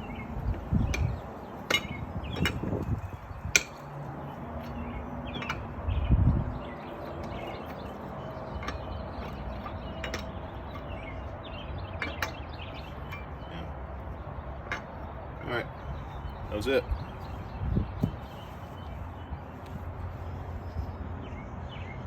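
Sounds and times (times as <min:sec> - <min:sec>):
wrench clanking on lug nuts: 0:00.5 - 0:05.8, 0:07.0 - 0:13.5, 0:14.5 - 0:15.6.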